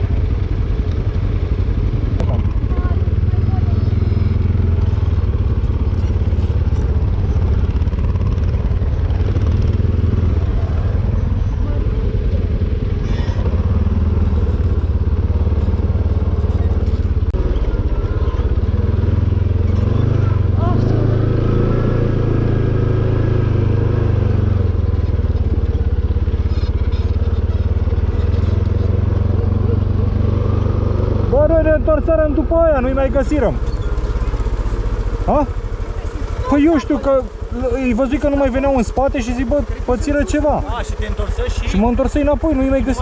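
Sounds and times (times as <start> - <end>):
atv engine running: 0.0 - 43.0.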